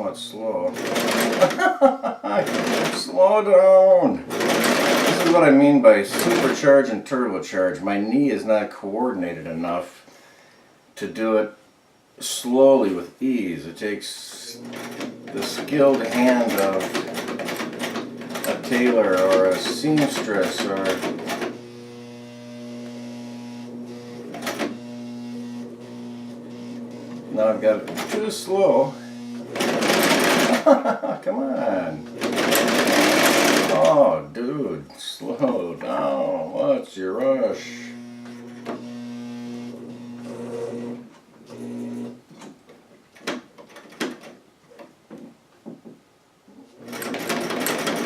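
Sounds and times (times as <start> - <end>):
sewing machine motor whining: 2.4 - 3.0, 14.5 - 30.8, 31.6 - 34.0, 37.6 - 42.2
sharp clicks and knocks: 14.6 - 21.6, 42.3 - 46.0.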